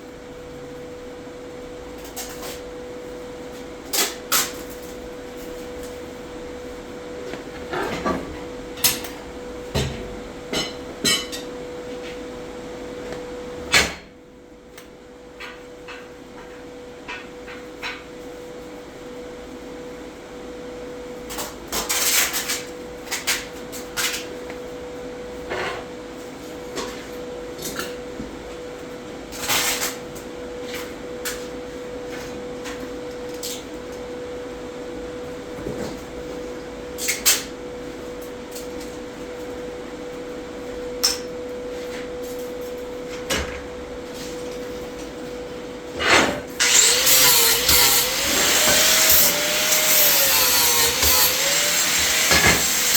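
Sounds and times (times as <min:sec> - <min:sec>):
loud power tool: 0:46.6 - 0:52.9.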